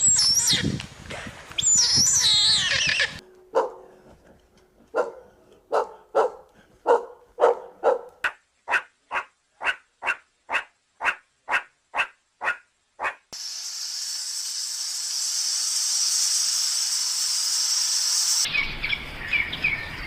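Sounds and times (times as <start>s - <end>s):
high bird chirps: 1.6s - 3.2s
dog barking: 3.5s - 3.9s, 4.9s - 13.2s.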